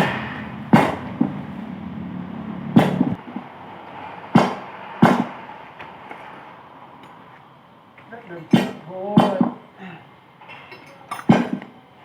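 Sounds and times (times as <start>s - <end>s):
hammer striking metal: 0.0s - 1.4s, 2.8s - 3.2s, 4.3s - 5.4s, 8.5s - 9.6s, 10.7s - 11.6s
steady hum: 0.0s - 10.4s.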